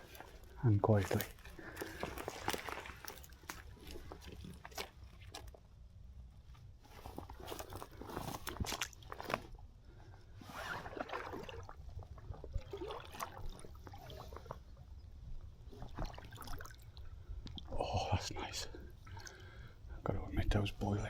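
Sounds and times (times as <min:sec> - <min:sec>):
boots crunching on gravel: 0:00.0 - 0:05.0
water sloshing: 0:00.0 - 0:05.6, 0:10.6 - 0:14.8, 0:15.6 - 0:17.7.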